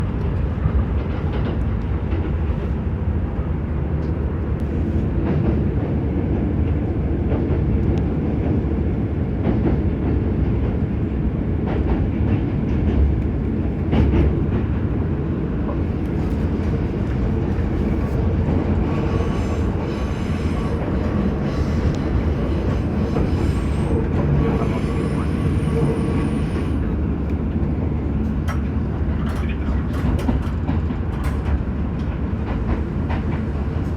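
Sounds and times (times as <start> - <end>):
train rumbling: 0.0 - 33.9
rail-joint clicks: 15.6 - 33.9.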